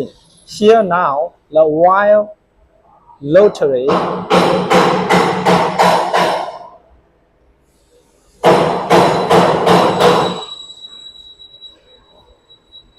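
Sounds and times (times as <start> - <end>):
spring forming machine knocks: 3.8 - 6.7, 8.4 - 10.5
faint high whine: 10.3 - 12.9.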